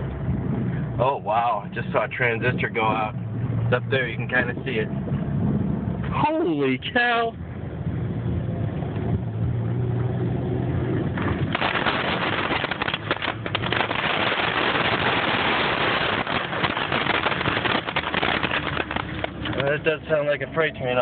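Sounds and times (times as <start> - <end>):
tornado winds roaring: 10.0 - 21.0.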